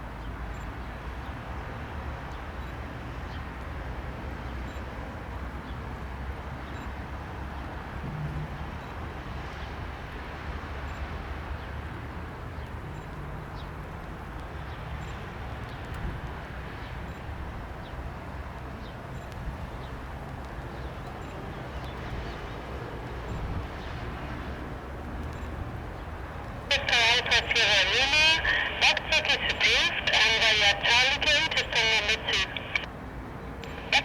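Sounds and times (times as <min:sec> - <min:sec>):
distant turboprop aircraft landing: 0:26.7 - 0:32.9, 0:33.6 - 0:34.0.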